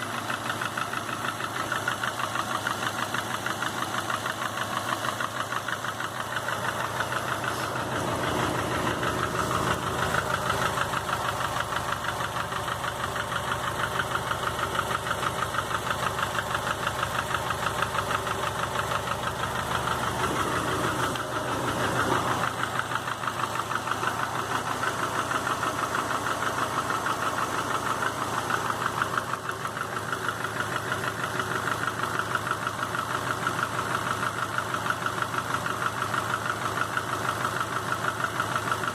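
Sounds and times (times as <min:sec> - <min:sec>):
car engine running: 0:00.0 - 0:38.9
rapid engine knock: 0:00.0 - 0:38.9.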